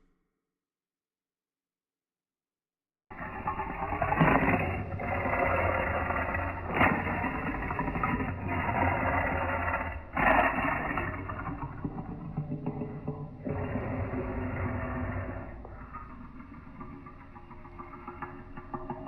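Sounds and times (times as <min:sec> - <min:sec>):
creature growling and roaring: 0:03.1 - 0:17.0.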